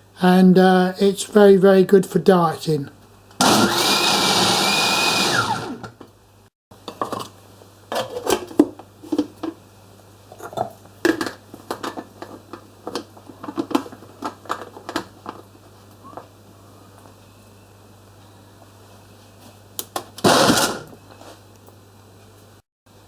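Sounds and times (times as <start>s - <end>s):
blender motor spinning down: 3.4s - 5.9s.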